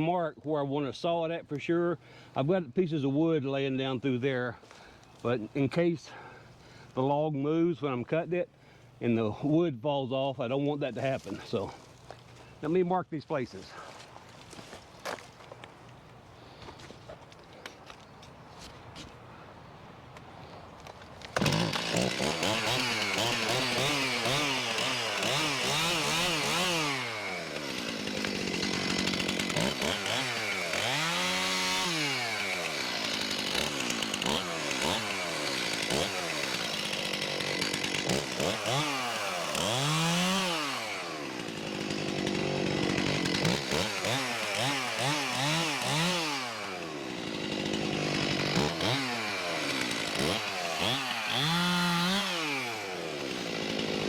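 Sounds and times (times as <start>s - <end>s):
chainsaw revving: 21.2s - 54.0s.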